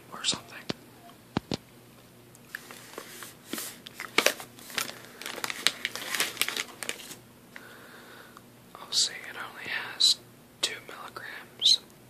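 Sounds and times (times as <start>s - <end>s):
plastic bag crinkling: 3.6s - 7.2s.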